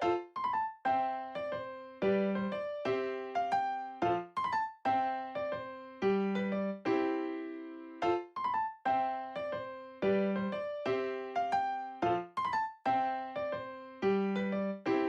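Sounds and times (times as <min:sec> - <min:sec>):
light piano-like keyboard tune: 0:00.0 - 0:15.0.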